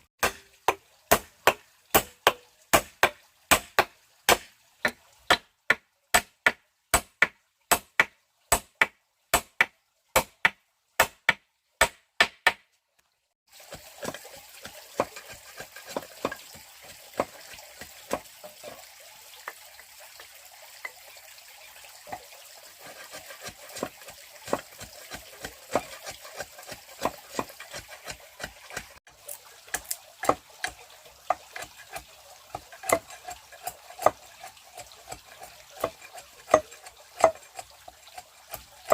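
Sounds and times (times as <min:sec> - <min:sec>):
blade chopping wood: 0:00.2 - 0:12.6, 0:14.0 - 0:16.6, 0:22.8 - 0:28.9, 0:29.7 - 0:31.7, 0:32.8 - 0:34.2, 0:35.1 - 0:37.4.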